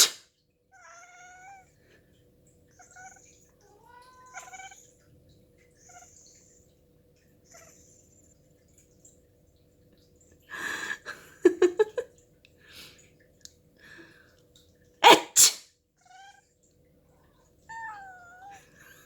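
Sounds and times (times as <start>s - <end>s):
cat meowing: 0.0s - 1.7s, 2.8s - 4.9s, 15.0s - 16.5s, 17.7s - 18.7s.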